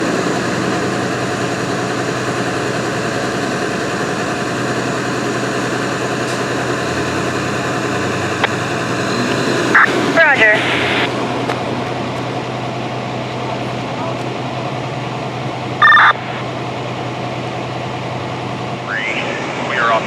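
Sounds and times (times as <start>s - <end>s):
radio static hiss: 9.1s - 11.1s, 15.8s - 16.4s, 18.9s - 20.0s.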